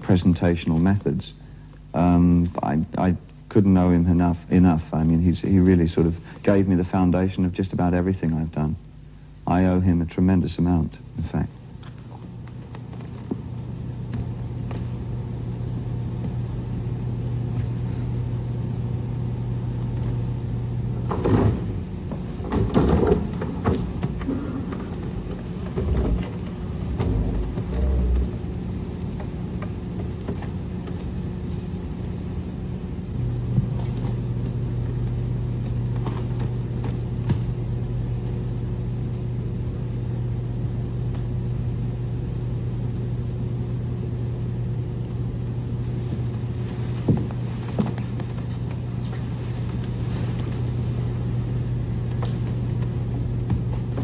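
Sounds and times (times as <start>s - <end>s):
low mechanical hum: 0.0s - 54.0s
knocks and bumps: 21.1s - 28.6s.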